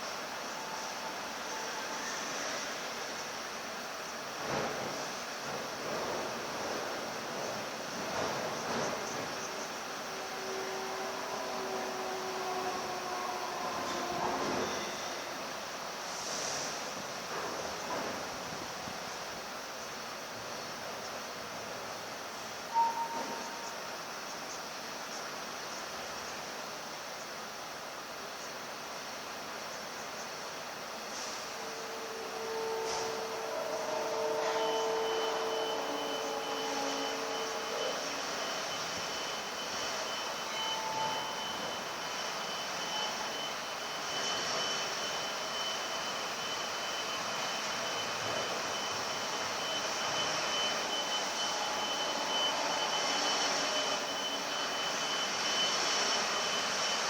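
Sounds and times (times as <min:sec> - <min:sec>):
short tone: 0:22.7 - 0:23.8, 0:31.2 - 0:57.0.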